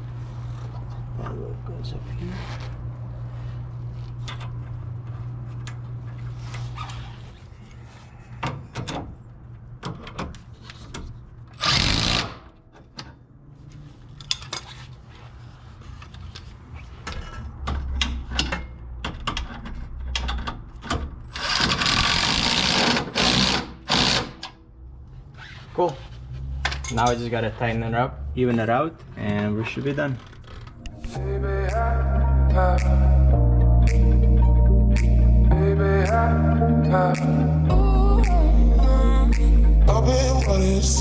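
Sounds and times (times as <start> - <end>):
handheld power tool running: 11.6 - 12.4, 21.4 - 24.4.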